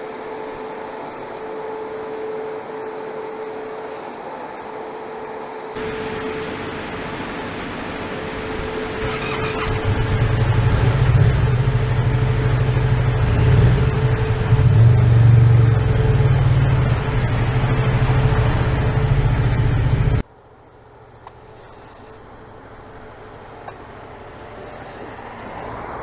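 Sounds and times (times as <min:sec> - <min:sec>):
motorcycle engine rumbling: 0:05.8 - 0:25.5.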